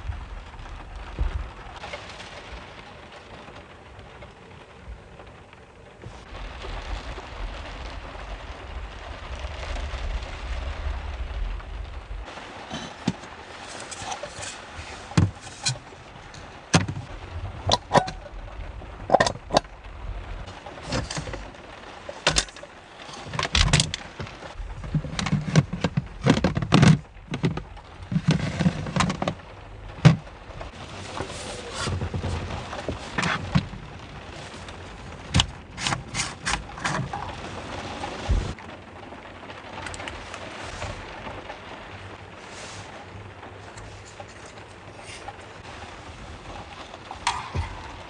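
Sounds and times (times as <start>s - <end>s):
low rumble: 0.0s - 1.8s, 5.7s - 14.1s, 14.7s - 22.0s, 43.0s - 48.0s
objects knocking and scraping: 12.7s - 18.3s, 19.1s - 19.7s, 20.5s - 21.6s, 22.2s - 29.4s, 30.0s - 30.3s, 31.0s - 37.5s, 43.7s - 45.4s, 47.1s - 48.0s.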